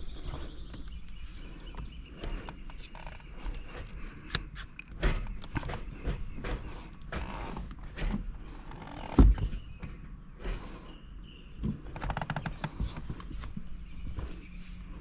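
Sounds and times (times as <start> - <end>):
clicks and rattles of shift knob: 1.8 - 9.5.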